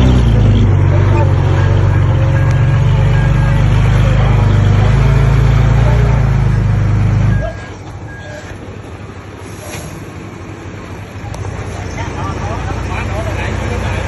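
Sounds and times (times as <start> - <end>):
heavy diesel engine running: 0.0 - 14.0.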